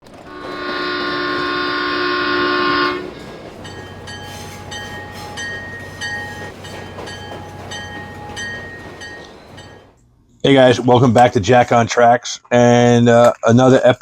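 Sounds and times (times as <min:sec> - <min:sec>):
low hum: 0:00.0 - 0:10.4
train horn chord: 0:00.1 - 0:08.9
bell ringing: 0:00.3 - 0:10.0.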